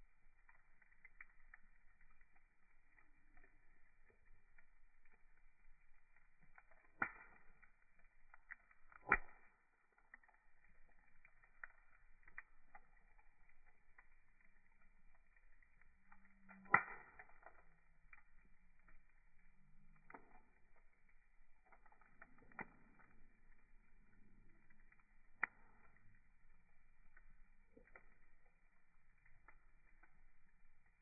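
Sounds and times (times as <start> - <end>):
wood fire crackling: 0.0 - 31.0
loud fire pops: 6.5 - 10.2, 16.4 - 18.3.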